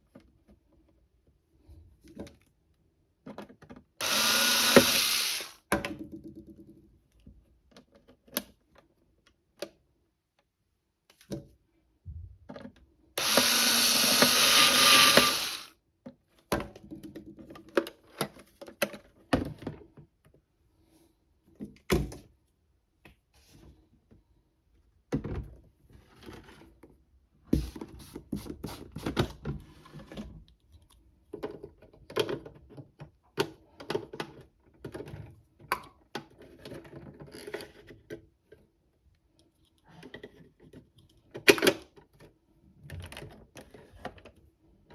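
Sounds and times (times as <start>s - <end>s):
small electric motor whirring: 4.0s - 5.6s, 13.2s - 15.7s.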